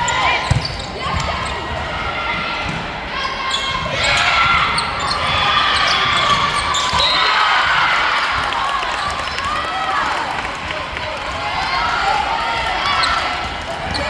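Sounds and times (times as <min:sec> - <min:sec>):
players shouting in echoing hall: 0:00.0 - 0:14.0.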